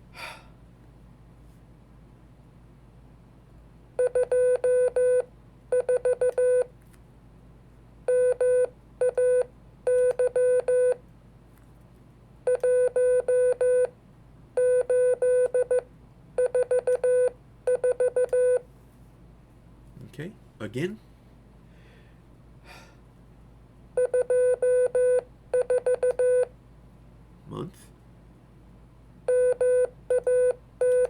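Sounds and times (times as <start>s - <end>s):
morse code beeps: 4.0s - 6.7s, 8.1s - 11.0s, 12.5s - 13.9s, 14.6s - 15.8s, 16.4s - 18.6s, 24.0s - 26.5s, 29.3s - 31.0s.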